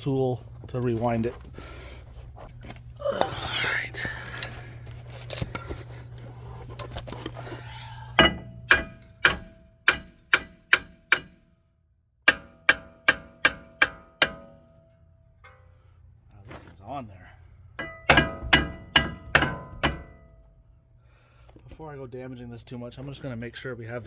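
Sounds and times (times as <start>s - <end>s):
hammer striking metal rotor: 8.2s - 11.4s, 12.3s - 15.7s, 17.8s - 20.3s.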